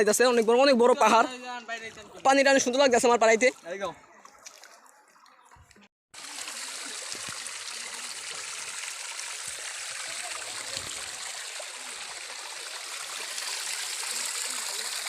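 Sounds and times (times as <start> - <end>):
stream running over rocks: 6.2 - 15.0.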